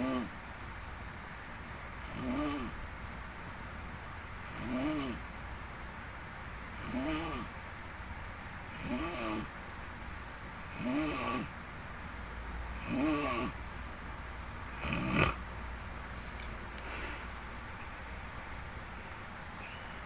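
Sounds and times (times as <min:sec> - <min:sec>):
man snoring: 0:00.0 - 0:00.3, 0:02.0 - 0:02.8, 0:04.5 - 0:05.2, 0:06.7 - 0:07.5, 0:08.7 - 0:09.5, 0:10.7 - 0:11.5, 0:12.8 - 0:13.6, 0:14.7 - 0:15.4
faint breath: 0:16.7 - 0:18.3, 0:19.0 - 0:20.0.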